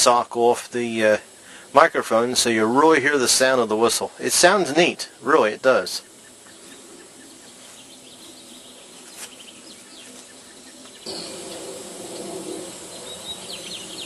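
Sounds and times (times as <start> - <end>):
birds chirping: 0.0 - 14.0
insects: 0.0 - 14.0.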